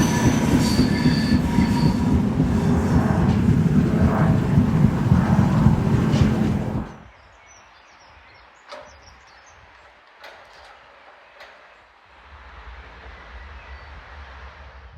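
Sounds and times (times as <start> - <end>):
low rumble: 0.0 - 7.0.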